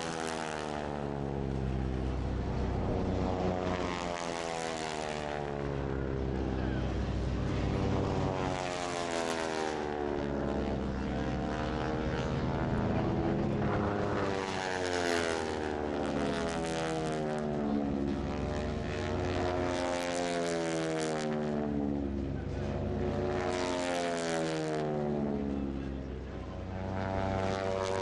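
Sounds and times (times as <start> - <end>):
propeller planes droning in flight: 0.0 - 28.0.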